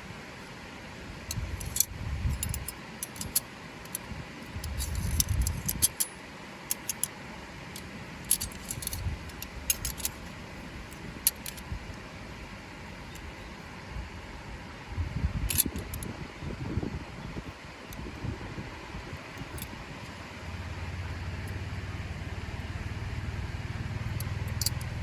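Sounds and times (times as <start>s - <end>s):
small metal objects jangling: 1.6s - 4.0s, 4.6s - 6.1s, 8.2s - 10.3s.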